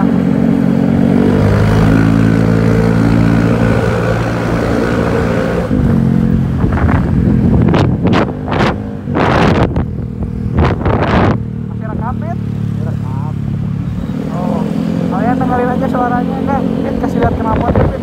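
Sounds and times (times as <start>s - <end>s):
scooter engine running: 0.0s - 18.0s
wind noise rushes: 3.2s - 11.5s, 17.1s - 18.0s.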